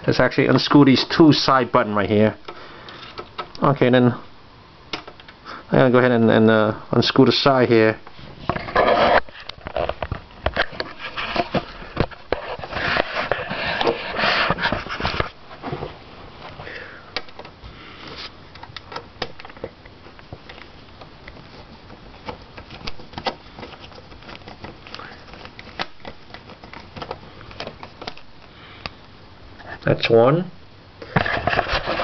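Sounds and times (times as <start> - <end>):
rustling handling noise: 7.4 - 29.1, 31.0 - 32.0.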